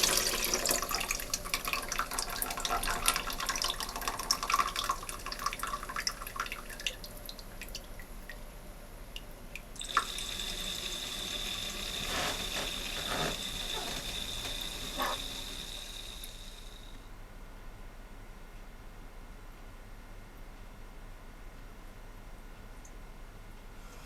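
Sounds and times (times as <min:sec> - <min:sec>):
hissing water flow with whistle: 0:00.0 - 0:05.9, 0:09.8 - 0:17.0
water splashing in toilet tank: 0:00.0 - 0:08.1, 0:09.8 - 0:16.6
water dripping: 0:00.0 - 0:08.5, 0:09.1 - 0:16.6.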